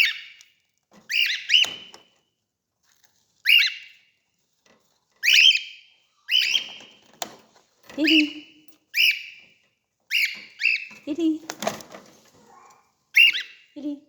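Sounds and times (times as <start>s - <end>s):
cockatiel shrill calls: 1.1s - 1.9s, 3.5s - 3.9s, 5.2s - 6.8s, 8.9s - 9.4s, 10.1s - 10.9s, 13.2s - 13.6s.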